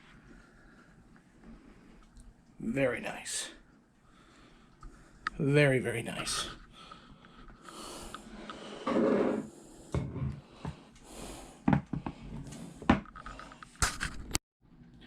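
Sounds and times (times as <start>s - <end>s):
soft breath: 4.0s - 5.4s, 6.6s - 13.6s.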